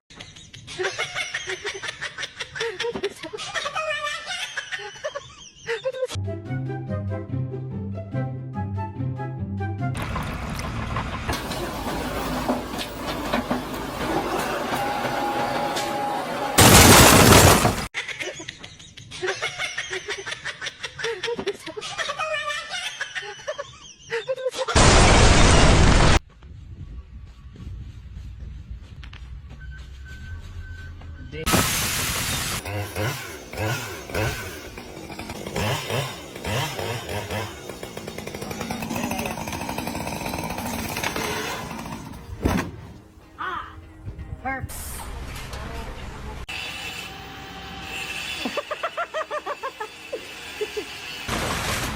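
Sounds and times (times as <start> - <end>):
loud crash: 16.5 - 17.9, 24.8 - 26.2
motor buzzing rattle: 32.5 - 42.5.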